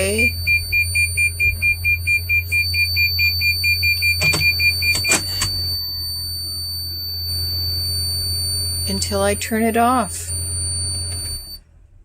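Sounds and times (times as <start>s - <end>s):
pulsing high-pitched whistle: 0.0s - 11.6s
clicks: 3.2s - 5.7s.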